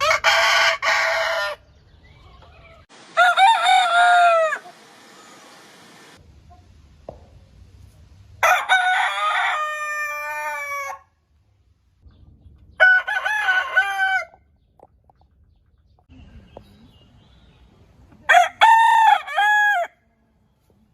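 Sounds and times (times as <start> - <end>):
roosters crowing: 0.0 - 1.8, 2.5 - 5.4, 8.4 - 11.2, 12.8 - 14.5, 18.3 - 20.0.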